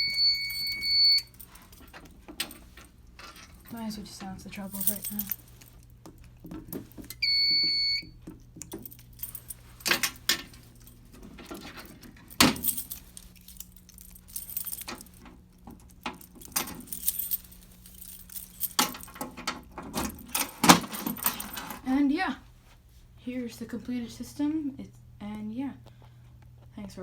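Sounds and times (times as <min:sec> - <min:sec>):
alarm panel beep: 0:00.0 - 0:01.3, 0:07.2 - 0:08.2
keys jangling: 0:00.0 - 0:07.2, 0:08.6 - 0:21.8
low electrical hum: 0:00.0 - 0:27.0.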